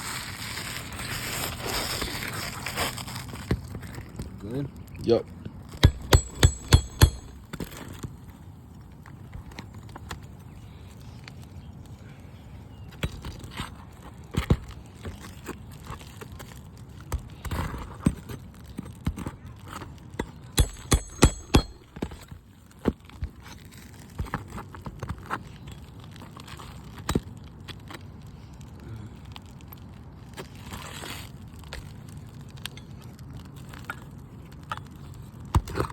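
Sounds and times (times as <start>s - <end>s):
sharp ringing strikes: 5.8s - 7.4s, 20.6s - 21.8s
tools knocking on shingle roof: 5.8s - 7.5s, 20.6s - 22.2s.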